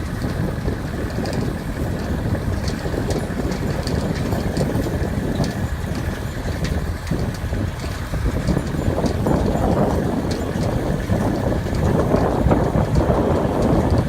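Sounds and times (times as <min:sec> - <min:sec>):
tractor diesel engine running: 0:00.0 - 0:14.0.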